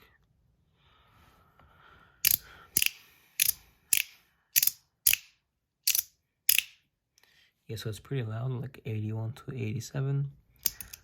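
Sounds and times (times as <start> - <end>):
fidget slider clicks: 2.2 - 6.8.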